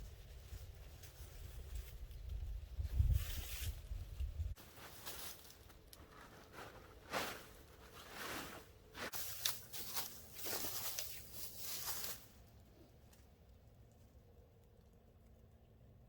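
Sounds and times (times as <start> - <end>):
footsteps crunching on forest floor: 4.6 - 12.4.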